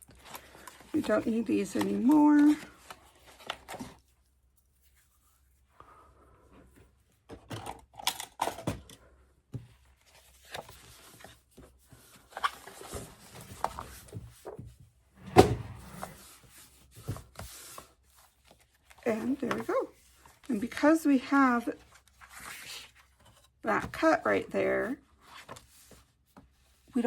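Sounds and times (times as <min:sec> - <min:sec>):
paper rustling: 0:00.1 - 0:04.1.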